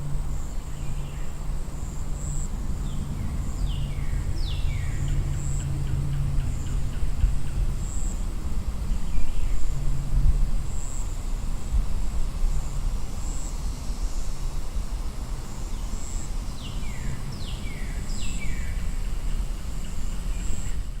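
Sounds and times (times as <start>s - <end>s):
distant vehicles rumbling: 0.0s - 13.2s
high-pitched insect drone: 0.0s - 20.9s.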